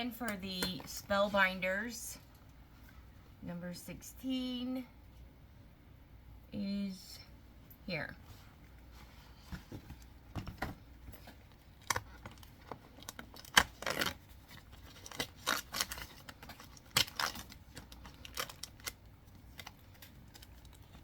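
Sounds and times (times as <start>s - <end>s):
packaging clicks and crinkles: 11.7s - 21.0s
packaging tearing: 11.8s - 21.0s.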